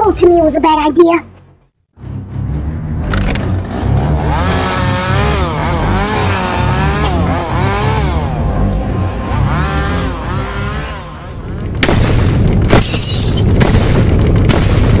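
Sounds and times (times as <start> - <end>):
heavy low rumble: 2.0 - 12.8
chainsaw engine revving: 3.1 - 11.8.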